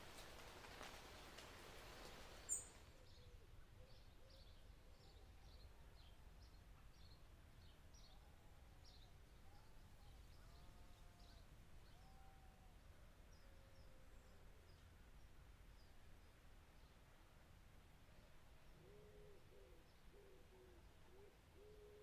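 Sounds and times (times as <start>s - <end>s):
birds chirping: 0.1s - 3.2s.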